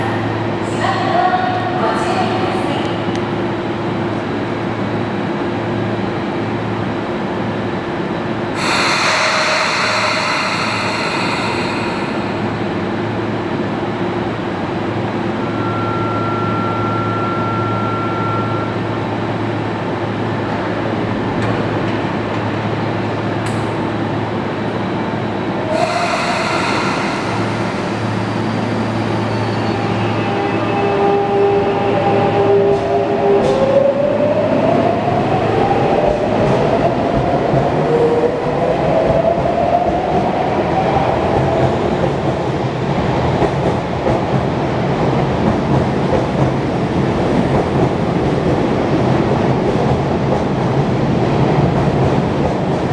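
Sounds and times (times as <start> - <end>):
loud hissing bursts: 8.6 - 12.8, 25.7 - 29.3
steady tone: 8.6 - 13.3, 25.6 - 30.7.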